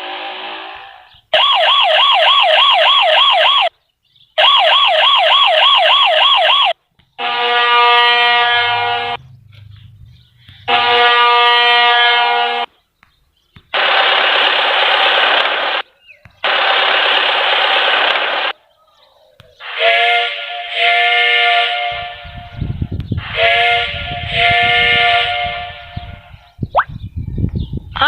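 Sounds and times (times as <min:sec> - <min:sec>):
vehicle horn blasts: 0:07.2 - 0:09.2, 0:10.7 - 0:12.7, 0:23.3 - 0:26.2.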